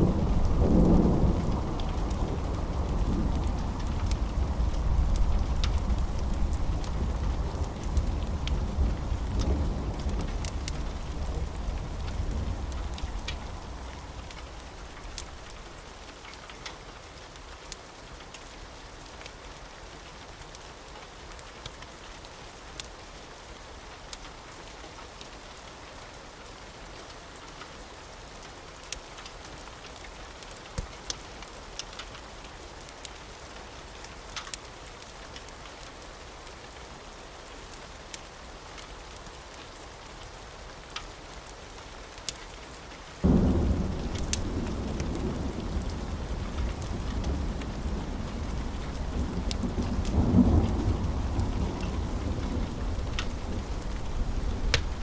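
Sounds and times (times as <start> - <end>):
low thunder rumble: 0.0 - 15.7, 43.2 - 55.0
steady rain: 0.0 - 55.0
sharp ticks and pops: 3.3 - 7.0, 34.3 - 34.7, 43.2 - 55.0.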